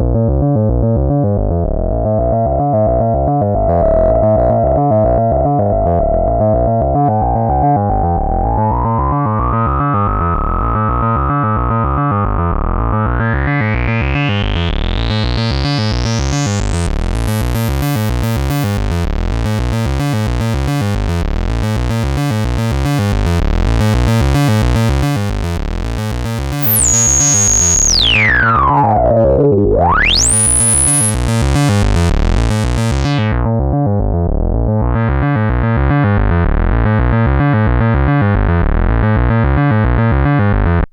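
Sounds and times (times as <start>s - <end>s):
synthesizer note pattern with filter sweep: 1.5s - 33.6s.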